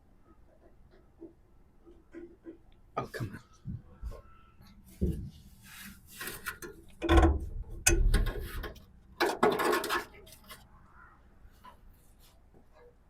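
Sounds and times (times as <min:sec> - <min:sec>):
metal scraping and knocking: 0:04.9 - 0:10.6.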